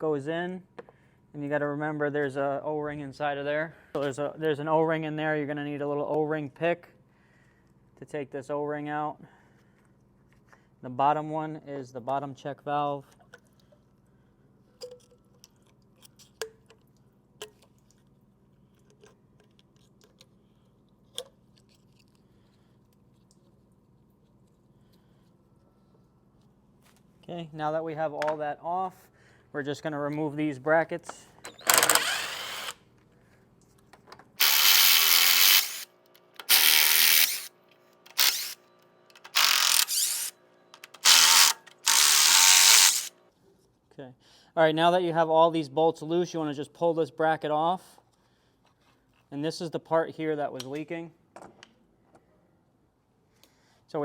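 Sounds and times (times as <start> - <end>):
power drill spinning socket: 31.4 - 32.8, 34.3 - 37.5, 38.1 - 43.1.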